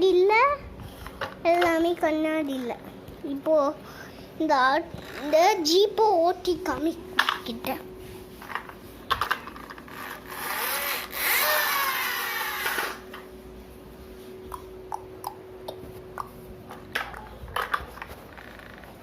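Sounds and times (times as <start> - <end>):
toy wheels rasping whirr: 9.2 - 13.0.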